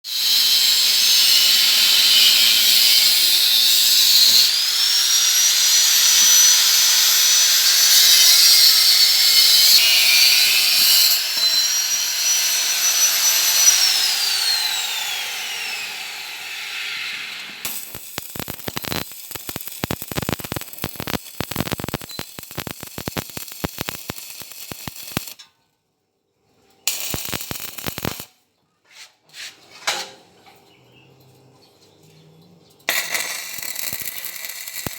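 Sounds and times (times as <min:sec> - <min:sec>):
power tool motor whining: 0:04.2 - 0:23.2.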